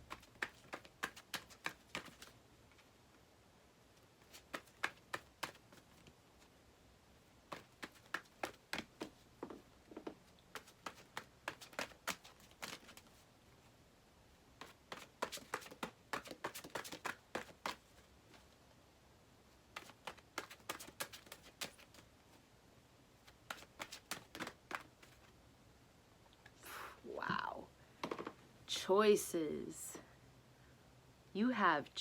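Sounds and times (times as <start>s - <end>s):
cards being shuffled: 0.0s - 2.9s, 4.2s - 6.1s, 7.5s - 9.6s, 10.5s - 13.2s, 14.6s - 18.4s, 19.7s - 22.1s, 23.2s - 25.3s.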